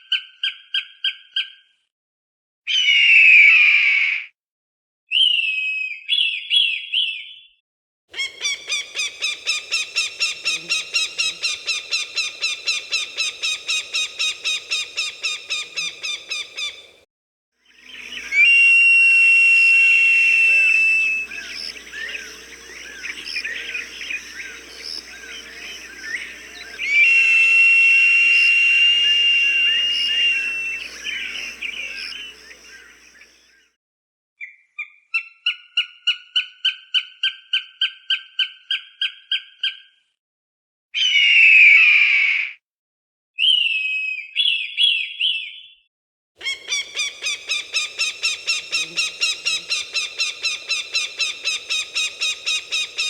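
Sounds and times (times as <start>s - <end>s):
small birds chirping: 8.2s - 17.0s, 17.7s - 18.7s, 19.8s - 33.4s, 46.4s - 53.0s
hawk high-pitched screams: 18.1s - 32.8s
hawk calling sharp repeated notes: 20.3s - 33.0s, 46.4s - 53.0s.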